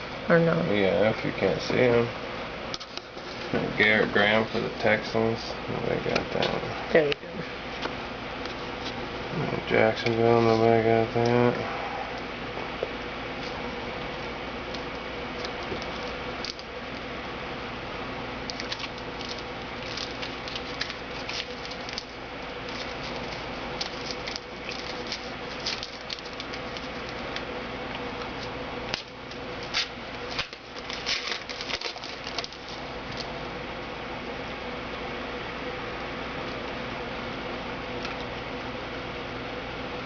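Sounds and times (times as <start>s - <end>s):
faint hum: 0.0s - 40.0s
cards and packaging rustling: 9.6s - 11.6s, 14.7s - 16.8s, 18.4s - 27.5s, 28.2s - 33.4s.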